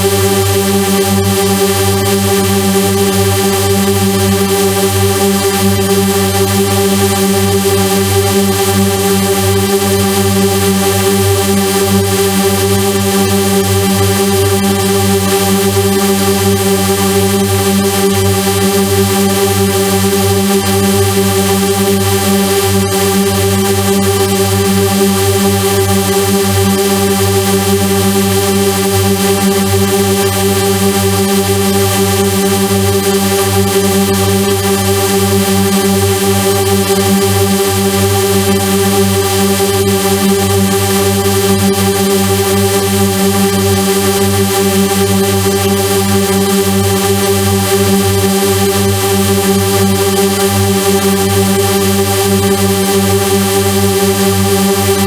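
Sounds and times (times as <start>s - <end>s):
electronic synthesizer drone: 0.0s - 55.0s.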